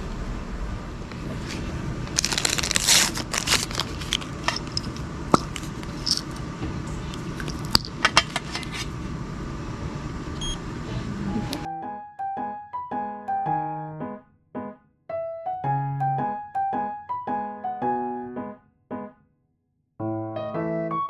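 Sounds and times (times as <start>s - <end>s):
room hum: 0.0s - 11.7s
clicks and crackling rustle: 1.1s - 8.9s.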